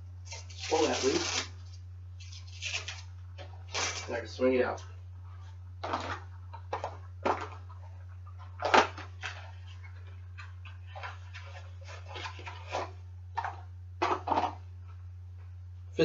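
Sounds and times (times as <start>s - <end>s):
steady low hum: 0.0s - 16.0s
rustles and knocks of handling: 4.7s - 15.8s.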